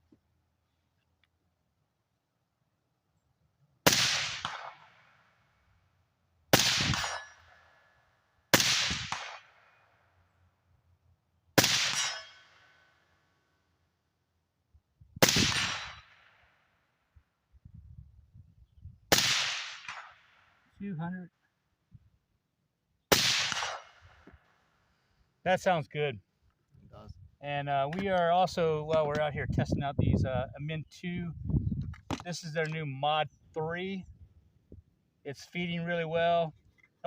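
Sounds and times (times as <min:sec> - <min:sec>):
suppressed rifle shots: 0:03.8 - 0:05.2, 0:06.5 - 0:07.6, 0:08.5 - 0:09.8, 0:11.6 - 0:12.6, 0:15.2 - 0:16.4, 0:19.1 - 0:20.5, 0:23.1 - 0:24.3.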